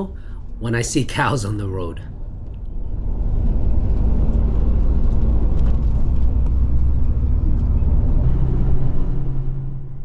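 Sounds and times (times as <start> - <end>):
bus engine and road rumble: 0.0 - 10.0
steady engine note: 0.0 - 10.0.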